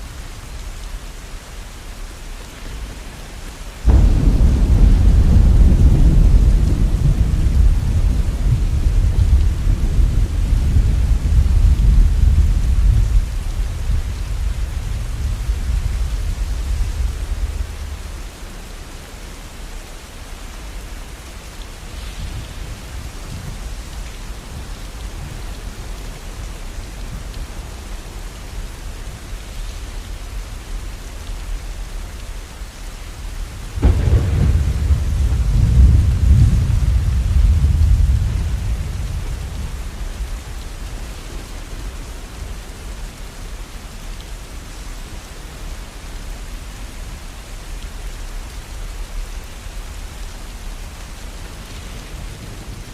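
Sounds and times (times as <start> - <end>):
steady rain falling: 0.0 - 52.9
thunderclap with low rumble: 3.0 - 19.2, 20.7 - 44.6.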